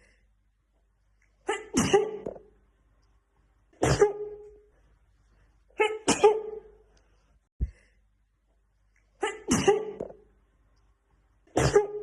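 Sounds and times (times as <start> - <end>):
woman sneezing: 1.4 - 2.3, 3.8 - 4.4, 5.8 - 6.6, 9.2 - 10.1, 11.5 - 12.0.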